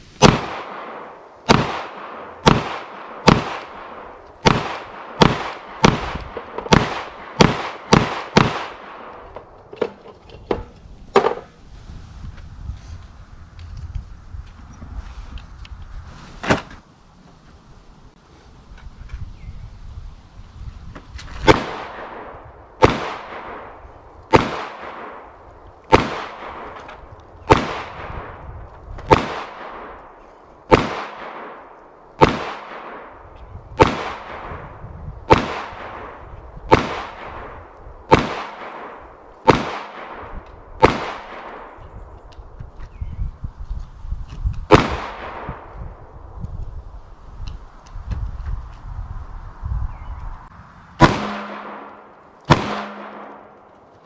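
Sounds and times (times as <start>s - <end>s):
pistol shots with echo: 0.2s - 9.2s, 21.5s - 25.3s, 25.9s - 26.8s, 27.5s - 28.2s, 29.1s - 30.0s, 30.7s - 33.2s, 33.8s - 34.6s, 35.3s - 41.7s, 51.0s - 53.6s.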